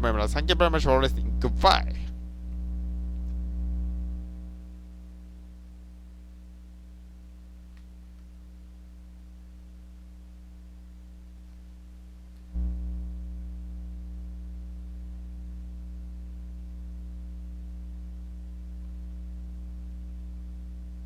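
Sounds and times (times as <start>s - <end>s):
steady low hum: 0.0s - 21.0s
click: 2.5s - 3.4s, 7.7s - 8.3s, 12.3s - 12.6s.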